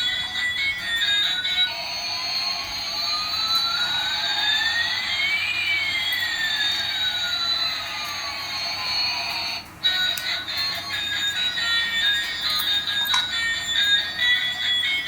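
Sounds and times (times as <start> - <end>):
rising and falling whines: 1.4 - 9.6.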